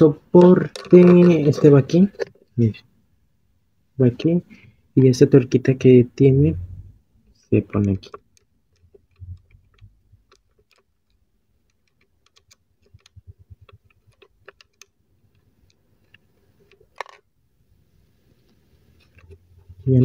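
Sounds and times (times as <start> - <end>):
clicks of small parts handled: 0.4 - 2.4, 15.6 - 17.3.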